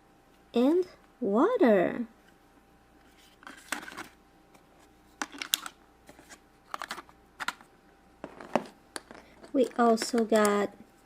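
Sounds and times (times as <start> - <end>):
plastic toys clicking and rustling: 9.0 - 10.6.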